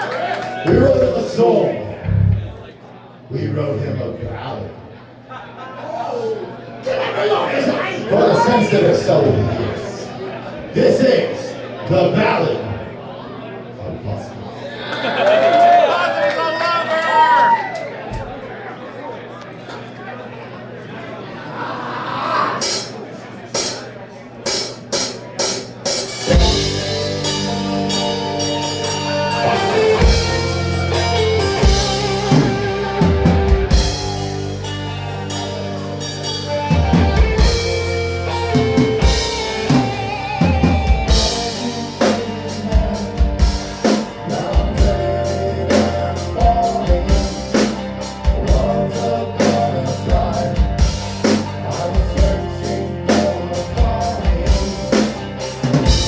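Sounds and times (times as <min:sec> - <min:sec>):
rock music: 0:02.0 - 0:02.6, 0:24.6 - 0:56.0
drum kit: 0:23.6 - 0:23.9, 0:24.5 - 0:56.0.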